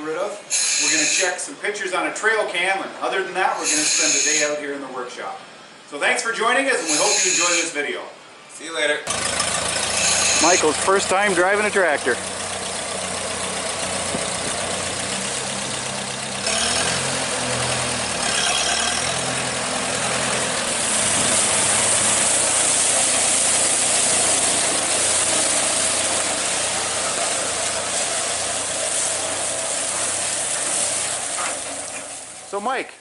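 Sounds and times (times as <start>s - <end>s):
strong high hiss: 3.3s - 4.7s, 5.9s - 8.0s, 19.6s - 33.0s
tractor engine revving: 9.1s - 32.5s.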